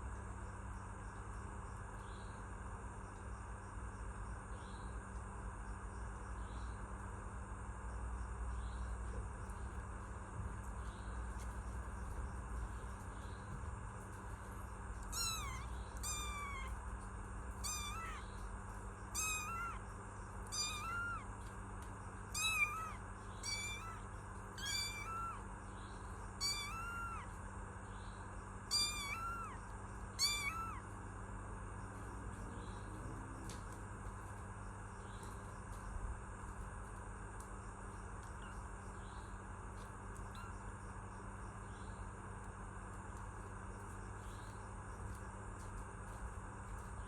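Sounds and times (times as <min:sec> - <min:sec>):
kitten meowing: 0:15.0 - 0:16.8, 0:17.5 - 0:18.4, 0:19.1 - 0:21.3, 0:22.3 - 0:25.4, 0:26.4 - 0:27.4, 0:28.7 - 0:30.9, 0:40.2 - 0:40.6.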